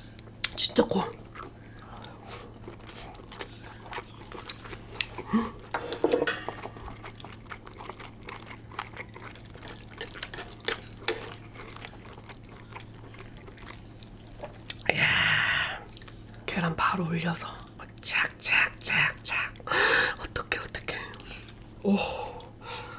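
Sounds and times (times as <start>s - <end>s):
wet squishy food sounds: 0.2s - 5.7s, 6.6s - 14.9s.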